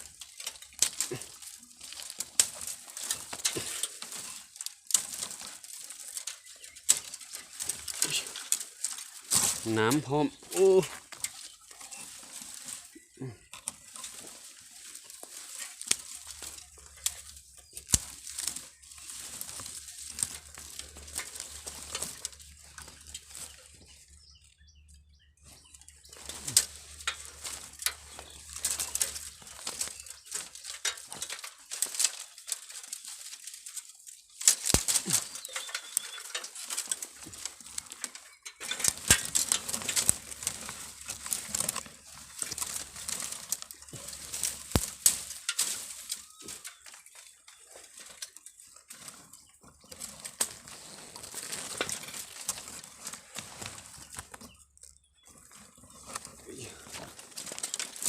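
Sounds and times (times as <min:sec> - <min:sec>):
rustling and crackling: 0:00.0 - 0:58.0.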